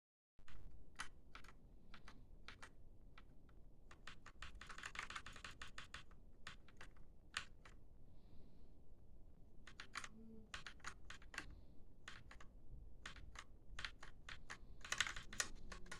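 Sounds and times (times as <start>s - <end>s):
mechanical keyboard keystrokes: 0.5s - 3.3s, 3.9s - 7.8s, 9.7s - 11.5s, 12.1s - 15.9s.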